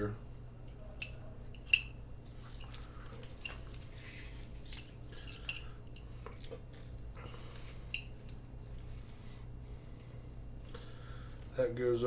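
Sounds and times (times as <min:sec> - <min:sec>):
steady low hum: 0:00.0 - 0:12.0
wiring harness clicking and rustling: 0:02.5 - 0:07.0.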